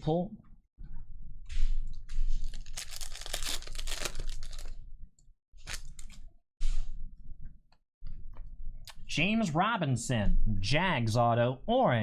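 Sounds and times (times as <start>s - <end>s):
wrapper crinkling: 2.4s - 4.8s, 5.6s - 6.3s
wrapper tearing: 2.4s - 4.8s, 5.6s - 6.2s.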